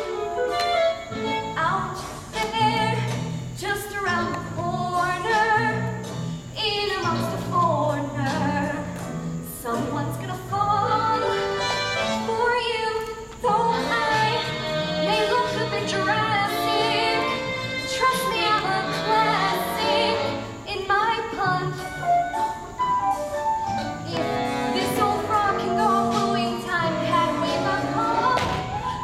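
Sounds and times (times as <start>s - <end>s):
instrumental accompaniment: 0.0s - 9.9s, 21.4s - 29.0s.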